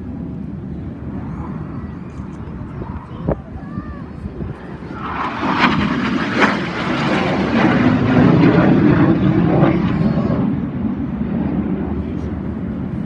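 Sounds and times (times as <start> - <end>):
aircraft flying past: 0.0 - 13.0.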